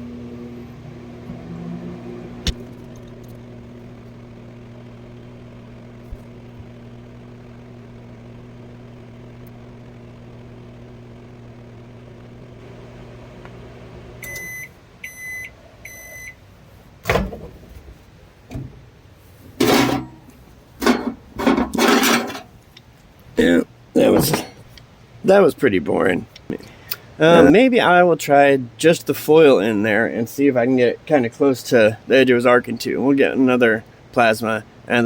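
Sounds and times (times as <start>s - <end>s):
microwave oven humming: 0.0s - 35.0s
microwave beeps: 14.2s - 16.4s
loud clunks and clatters: 17.0s - 18.8s, 19.6s - 22.5s.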